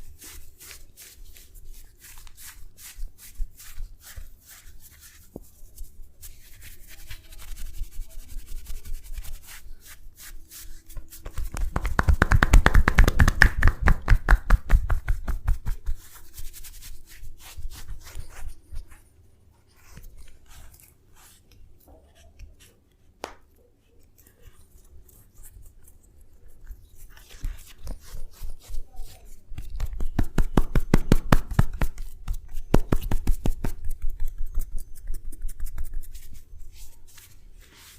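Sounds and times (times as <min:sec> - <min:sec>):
soft rubbing: 0:00.0 - 0:13.0, 0:13.9 - 0:37.9
hands tapping on body: 0:10.9 - 0:16.2, 0:23.2 - 0:23.5, 0:29.5 - 0:36.0.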